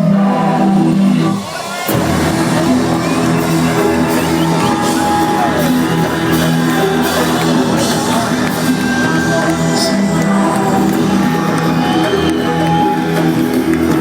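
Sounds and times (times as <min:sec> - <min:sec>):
live reggae band playing: 0:00.1 - 0:14.0.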